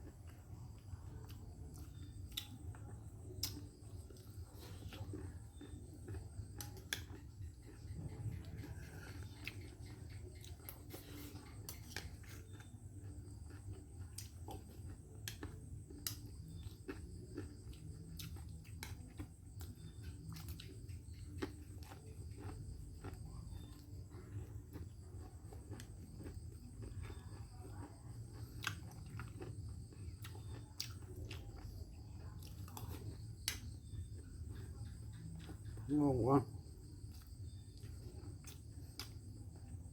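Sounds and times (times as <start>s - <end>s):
person chewing: 0.0s - 36.1s, 36.7s - 39.9s.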